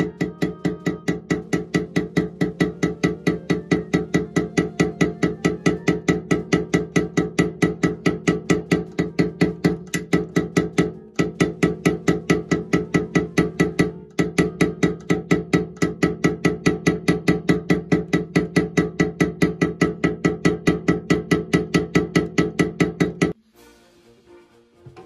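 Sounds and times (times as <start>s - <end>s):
music with wood-block beat: 0.0s - 25.0s.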